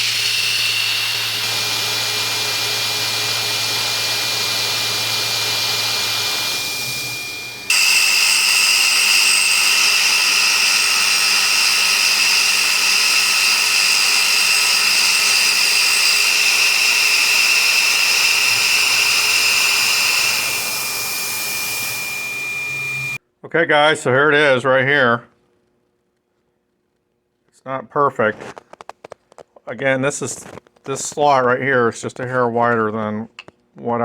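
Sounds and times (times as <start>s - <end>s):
milling machine spindle whine: 0.0s - 23.2s.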